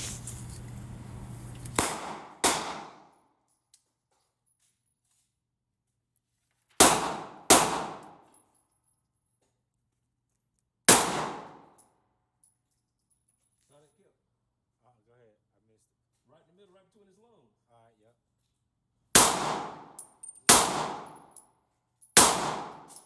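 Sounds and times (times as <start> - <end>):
gunshots: 1.8 - 3.0, 6.8 - 8.0, 10.9 - 11.6, 19.2 - 19.9, 20.5 - 21.2, 22.2 - 22.9.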